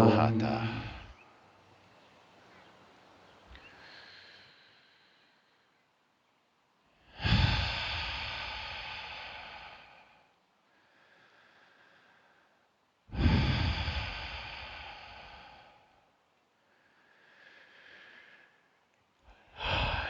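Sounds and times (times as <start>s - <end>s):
person breathing in: 3.5s - 5.8s, 7.2s - 18.7s, 19.3s - 20.0s
person exhaling forcefully: 7.2s - 10.0s, 13.1s - 15.7s, 19.5s - 20.0s.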